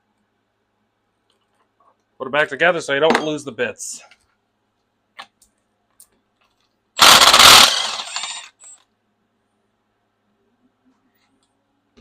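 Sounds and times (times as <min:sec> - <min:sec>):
rapid metallic rattling: 0:07.0 - 0:08.6.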